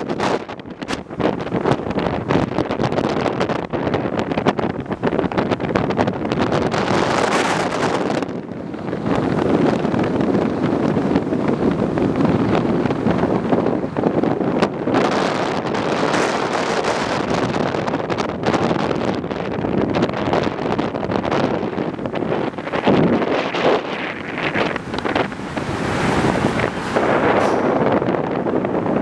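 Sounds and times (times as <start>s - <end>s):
wind buffeting microphone: 0.0s - 29.0s
river rushing: 21.9s - 29.0s.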